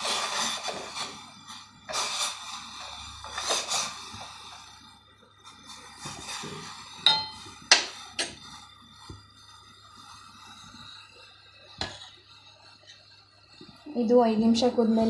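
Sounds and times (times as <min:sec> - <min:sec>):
metal utensil clinking on pot: 0:07.0 - 0:08.4.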